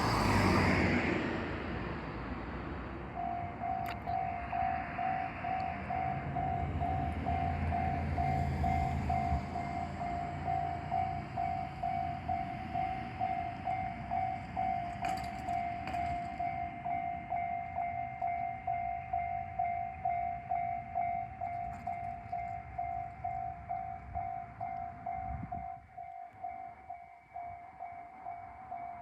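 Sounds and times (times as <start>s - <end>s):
railcar low rumble: 0.0s - 29.0s
level crossing alarm ringing: 3.1s - 29.0s
train wheel clacks: 5.5s - 16.8s.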